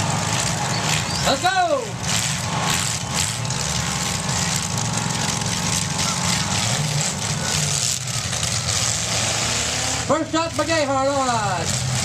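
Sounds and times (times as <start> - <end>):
car engines running hard: 0.0 - 12.0.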